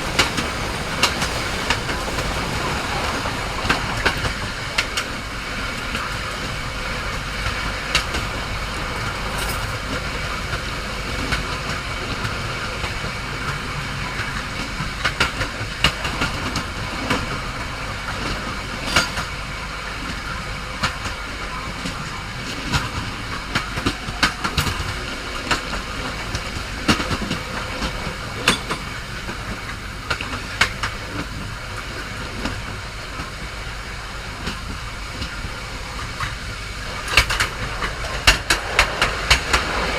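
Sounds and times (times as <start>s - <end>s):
wheels clicking on track: 0.0s - 5.5s
train rumbling on rails: 0.0s - 7.0s, 21.8s - 39.9s.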